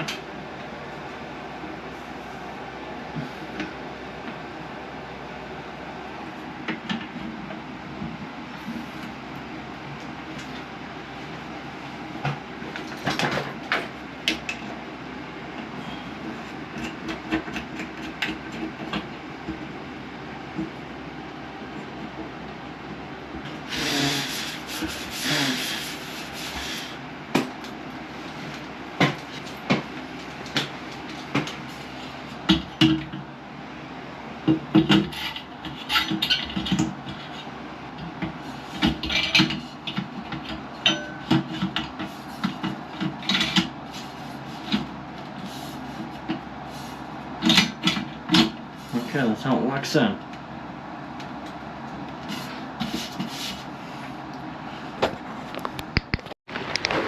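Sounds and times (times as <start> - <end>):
scraping rub: 52.2 - 53.7.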